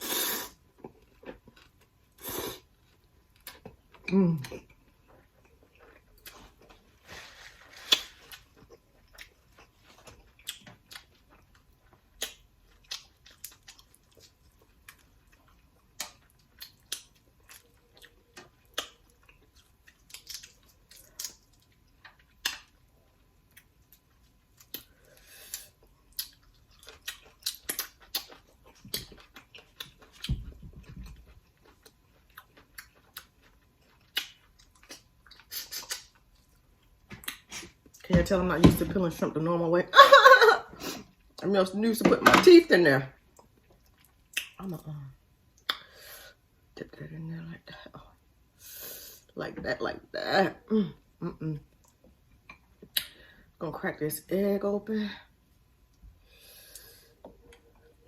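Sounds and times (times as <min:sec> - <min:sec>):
person chewing and smacking: 0:00.6 - 0:07.0, 0:07.8 - 0:38.0, 0:43.2 - 0:44.6.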